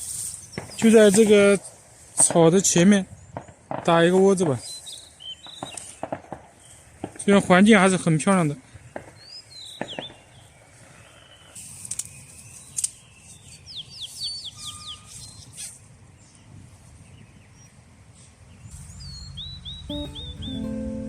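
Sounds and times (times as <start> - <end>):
small birds chirping: 4.5 - 6.9, 8.8 - 21.0.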